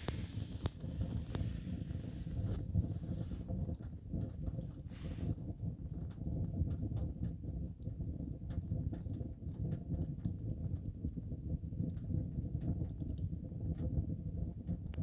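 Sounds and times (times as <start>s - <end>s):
fire low rumble: 0.0s - 15.0s
wood fire crackling and popping: 0.0s - 15.0s.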